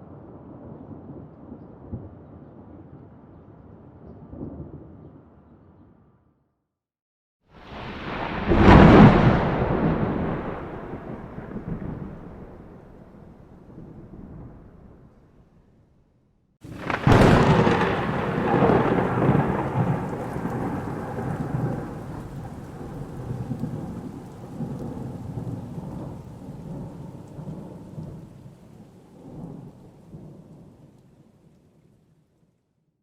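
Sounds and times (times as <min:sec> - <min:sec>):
thunder crack and rumble: 0:07.6 - 0:15.6, 0:16.6 - 0:31.0.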